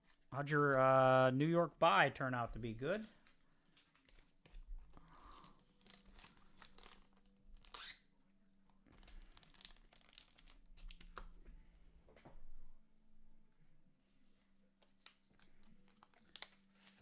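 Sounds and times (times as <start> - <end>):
foil wrappers crinkling: 2.5 - 8.0, 8.8 - 11.3, 14.8 - 17.0.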